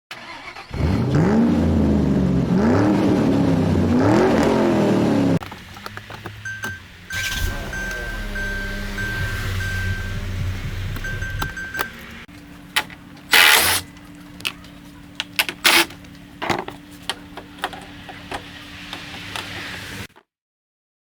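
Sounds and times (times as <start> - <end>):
clicks and knocks: 5.4 - 6.9.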